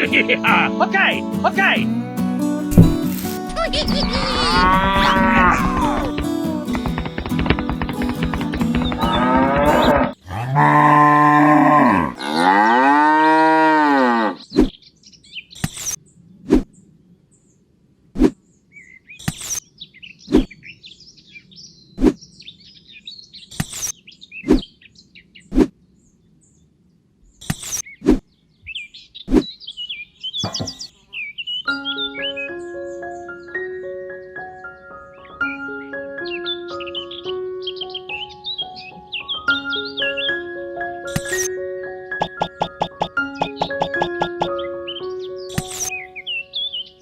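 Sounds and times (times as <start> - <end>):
music: 0.0 - 10.0, 31.7 - 47.0
sharp taps: 2.8 - 10.1, 42.2 - 44.6
cow mooing: 3.8 - 6.0, 9.9 - 14.4.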